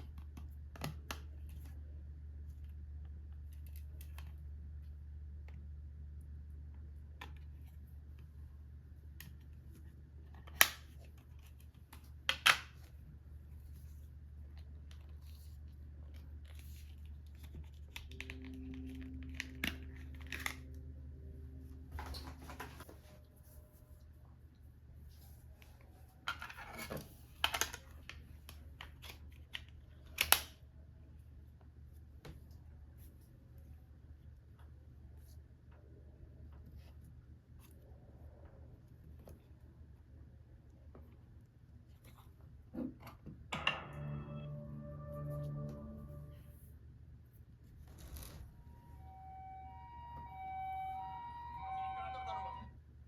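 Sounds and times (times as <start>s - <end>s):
steady low hum: 15.5s - 25.4s.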